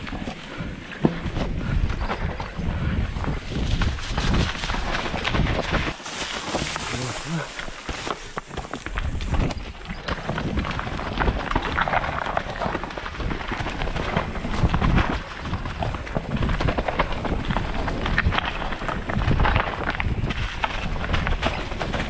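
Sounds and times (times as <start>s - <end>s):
wind rumble on microphone: 0.0s - 22.0s
tyres crunching on gravel: 5.9s - 9.5s.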